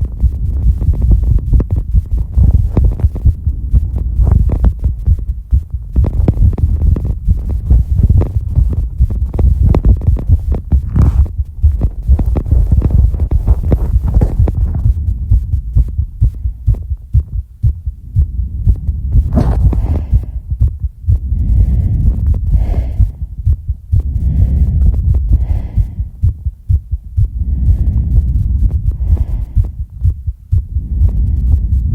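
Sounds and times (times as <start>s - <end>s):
deep rumble: 0.0s - 31.9s
heartbeat thumping: 0.0s - 31.9s
person breathing: 0.8s - 15.0s, 18.3s - 31.9s.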